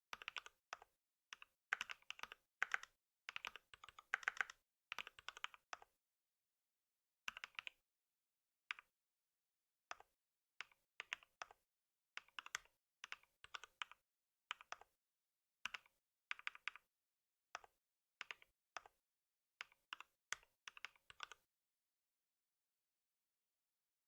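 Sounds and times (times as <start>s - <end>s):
typing on computer keyboard: 0.2s - 5.9s.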